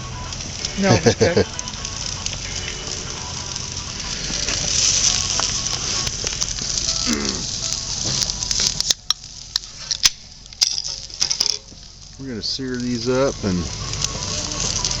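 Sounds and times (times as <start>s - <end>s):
campfire hissing: 0.0s - 15.0s
fire crackling: 0.0s - 15.0s.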